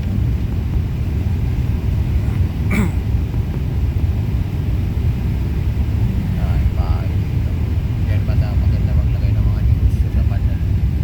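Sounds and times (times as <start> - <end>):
airliner cabin rumble: 0.0 - 11.0.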